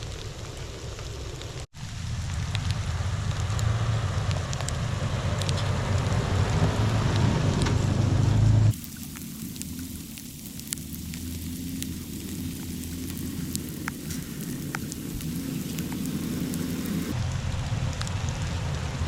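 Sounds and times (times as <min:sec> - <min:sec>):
vehicle engine rumbling: 0:00.0 - 0:19.0
hiss: 0:08.7 - 0:17.2
small ticks: 0:08.7 - 0:17.2.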